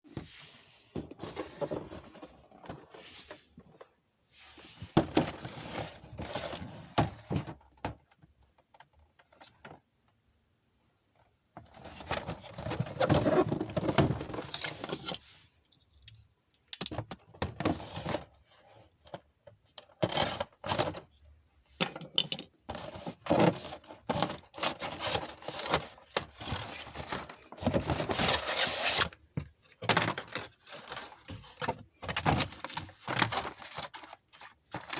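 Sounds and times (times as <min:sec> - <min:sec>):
packaging rustling: 0:22.7 - 0:34.9.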